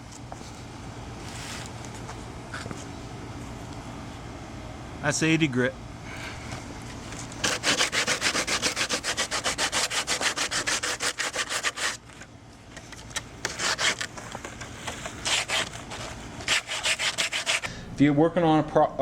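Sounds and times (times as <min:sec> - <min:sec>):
sandpaper rubbed by hand: 0:07.4 - 0:12.0, 0:13.5 - 0:14.0, 0:14.9 - 0:17.7.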